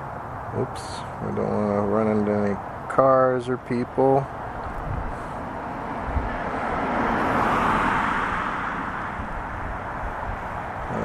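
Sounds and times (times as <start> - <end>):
car driving past: 4.4 - 11.0.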